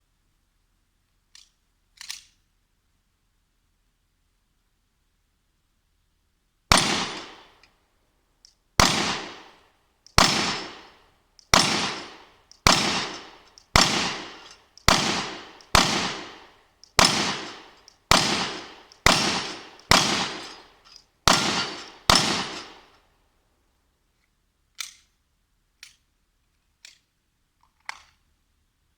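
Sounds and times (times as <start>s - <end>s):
pistol shots: 6.7s - 7.6s, 8.8s - 9.6s, 10.2s - 23.0s
faint clicks: 12.4s - 13.8s, 16.8s - 17.0s.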